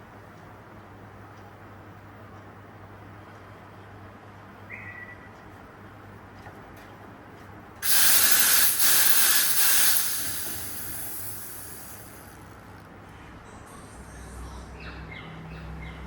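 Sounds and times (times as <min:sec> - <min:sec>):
espresso machine steam hiss: 0:07.8 - 0:12.5.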